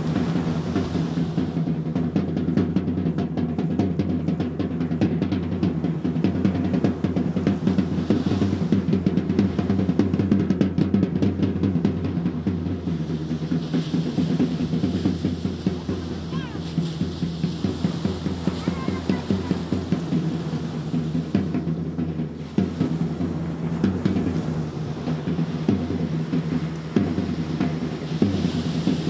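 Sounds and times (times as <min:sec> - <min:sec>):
drums in fast rhythm: 0:00.0 - 0:29.0.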